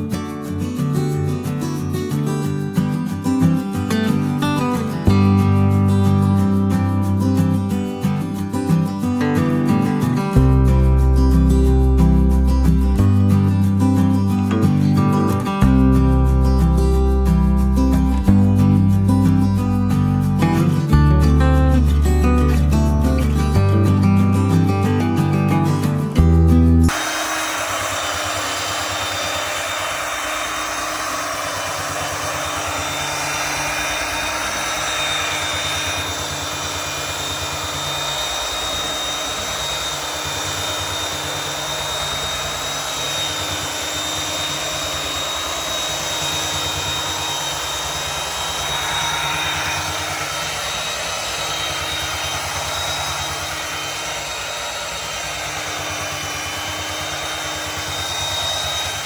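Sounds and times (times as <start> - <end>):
belt sander motor whine: 26.9 - 59.0
sanding belt rasping on wood: 26.9 - 59.0.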